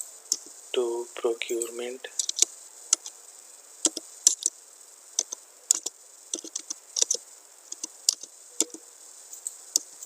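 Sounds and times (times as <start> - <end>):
keyboard typing clicks: 2.2 - 3.1, 3.9 - 4.5, 5.2 - 8.8.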